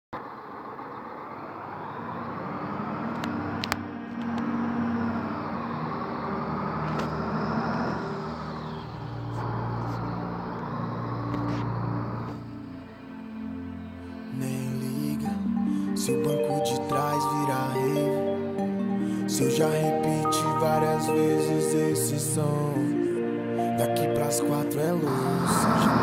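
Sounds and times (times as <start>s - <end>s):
car engine revving: 0.2s - 13.8s, 24.8s - 26.0s
faint music: 1.8s - 26.0s.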